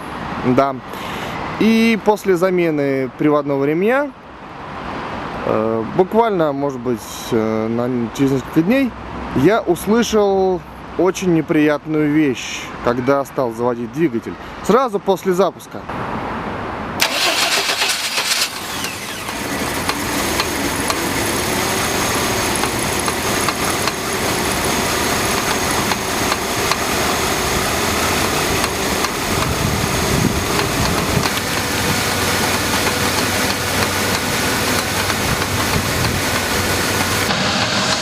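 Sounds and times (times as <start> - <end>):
engine idling: 17.0 - 38.0
starter motor cranking: 17.0 - 38.0
engine ticking knock: 19.1 - 38.0.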